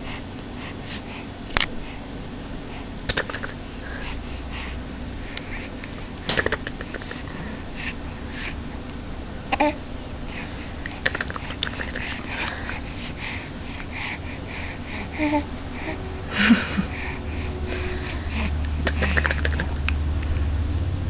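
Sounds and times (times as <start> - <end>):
baby grunting: 9.5 - 9.8
baby wheezy breathing: 9.5 - 19.3.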